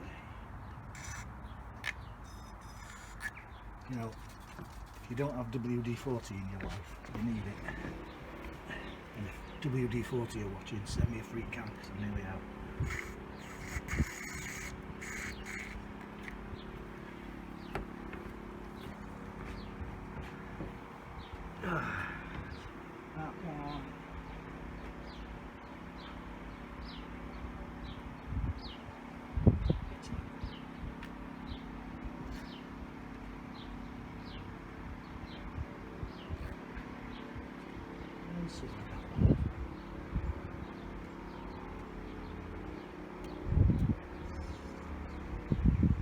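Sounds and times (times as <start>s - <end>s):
birds chirping: 0.0s - 46.0s
steady low hum: 0.0s - 46.0s
small bird chirping: 0.6s - 5.0s, 11.0s - 17.9s, 39.7s - 45.9s.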